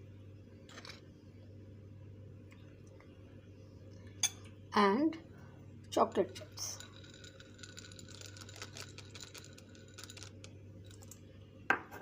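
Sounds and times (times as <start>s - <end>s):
chocolate chips pouring: 6.6s - 11.2s.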